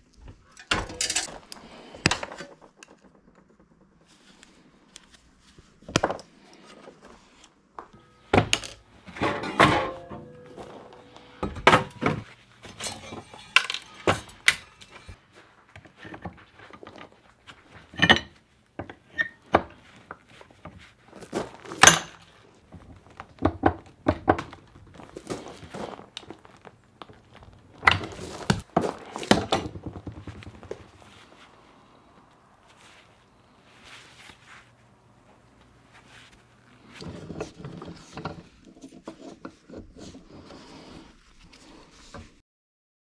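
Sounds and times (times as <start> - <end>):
knocks and metallic clanks: 0.6 - 4.0, 8.0 - 15.2.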